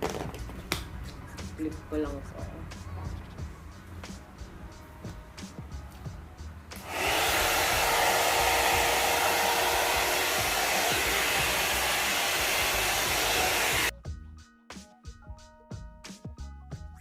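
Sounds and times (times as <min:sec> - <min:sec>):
hair dryer running: 0:06.8 - 0:13.9.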